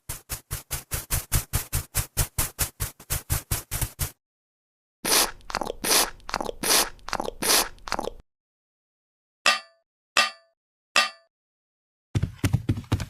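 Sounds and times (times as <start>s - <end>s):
short metallic clangs: 9.5s - 11.3s.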